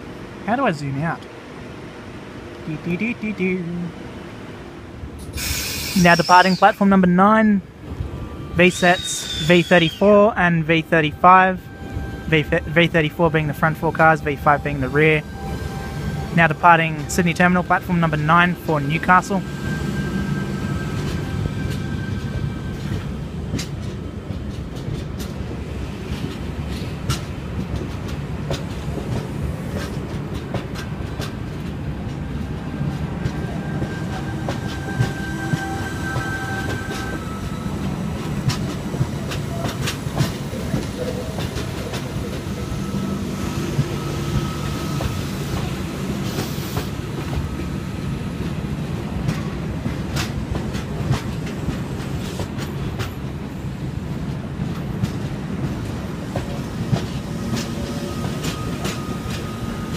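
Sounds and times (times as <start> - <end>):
train cars rolling rumble: 0.0 - 59.9
faint high wheel squeal: 5.4 - 6.8, 8.2 - 10.3, 33.3 - 38.3, 40.9 - 45.6, 57.4 - 59.9
wheels clicking over rail joints: 48.4 - 53.5.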